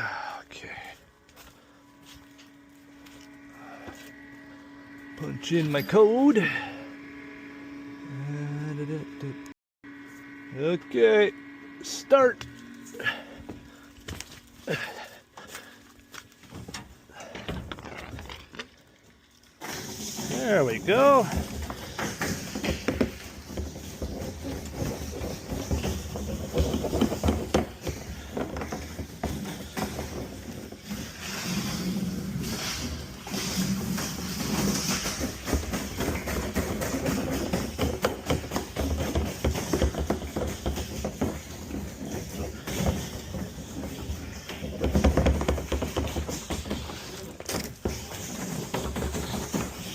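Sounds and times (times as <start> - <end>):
knocks and clatter: 19.6 - 32.0, 32.6 - 49.9.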